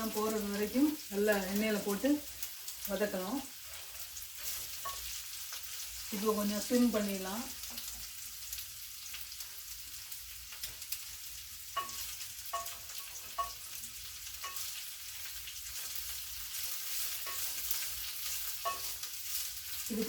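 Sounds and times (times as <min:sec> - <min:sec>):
green beans sizzling in oil: 0:00.0 - 0:20.0
spatula clicking on pan: 0:11.7 - 0:19.9.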